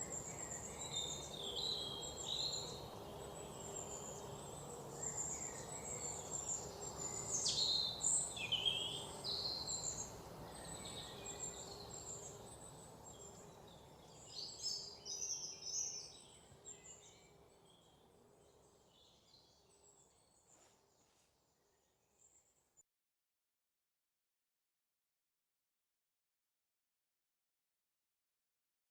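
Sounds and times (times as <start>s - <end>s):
birds chirping and twittering: 0.0s - 21.2s
steady background hiss: 0.0s - 21.4s.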